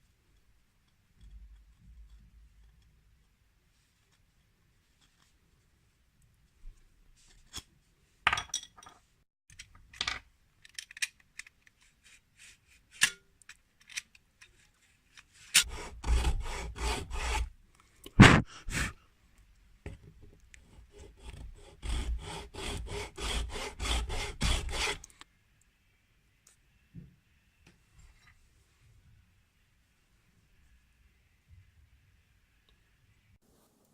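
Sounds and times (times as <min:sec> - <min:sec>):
hand tool strokes on wood: 0:15.4 - 0:17.5, 0:20.6 - 0:25.1
sharp knock: 0:18.2 - 0:18.5.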